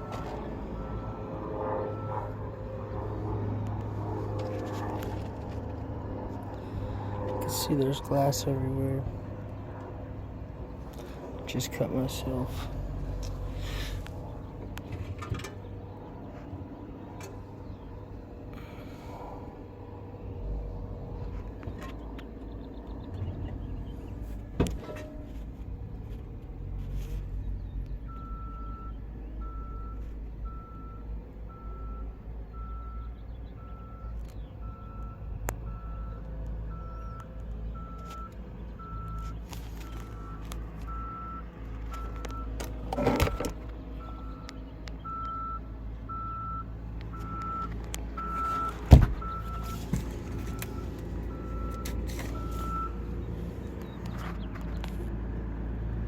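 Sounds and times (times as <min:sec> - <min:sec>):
reversing alarm beeping: 0:00.0 - 0:02.4, 0:28.1 - 0:53.1
low engine rumble: 0:00.0 - 0:56.0.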